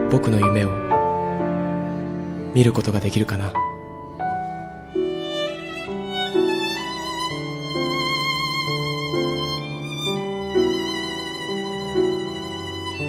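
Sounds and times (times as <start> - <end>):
violin melody with vibrato: 4.8 - 13.0.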